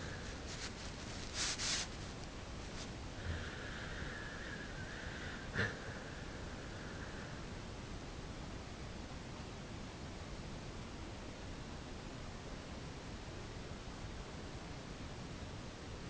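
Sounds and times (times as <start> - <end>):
dog snoring: 5.5 - 5.9.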